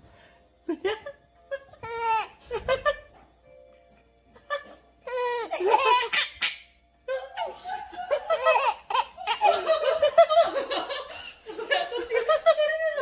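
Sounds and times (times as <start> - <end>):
baby laughing: 1.8 - 3.0, 4.6 - 10.2.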